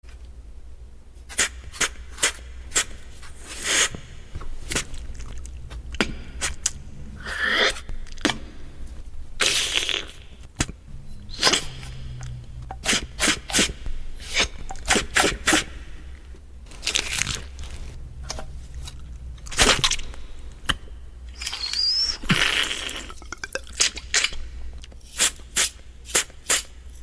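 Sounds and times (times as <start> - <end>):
hissing mouth scrapes: 1.3 - 4.1, 7.2 - 7.9, 9.4 - 10.2, 12.8 - 15.7, 21.4 - 24.4
beatbox mouth clicks: 19.4 - 26.7
gliding pitched squeak: 21.4 - 22.3.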